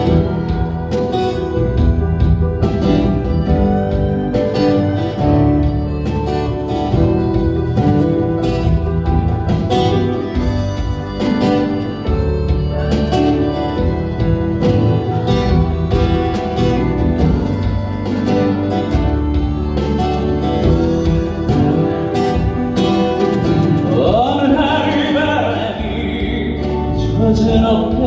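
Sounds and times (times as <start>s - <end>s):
live band with guitar and beat: 0.0s - 28.0s
person singing: 23.8s - 28.0s.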